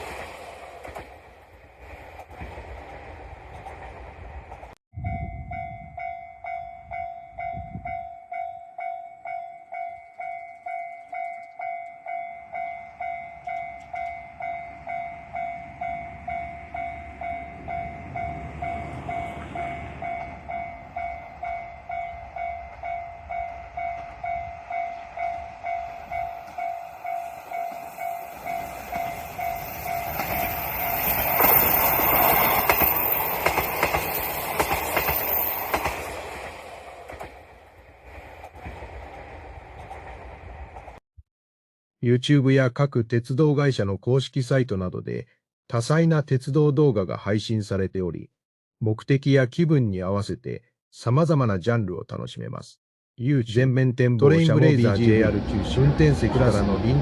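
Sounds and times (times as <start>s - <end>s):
train passing over crossing: 0.0s - 41.0s, 54.4s - 57.0s
level-crossing warning bell ringing: 5.0s - 35.8s.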